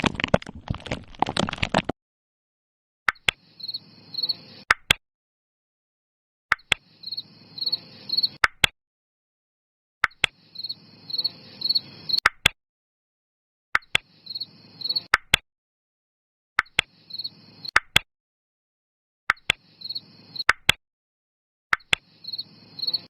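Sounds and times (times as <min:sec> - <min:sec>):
cricket chirping: 0:03.4 - 0:04.6, 0:06.8 - 0:08.4, 0:10.4 - 0:12.2, 0:14.0 - 0:15.1, 0:16.9 - 0:17.7, 0:19.6 - 0:20.5, 0:22.0 - 0:23.0.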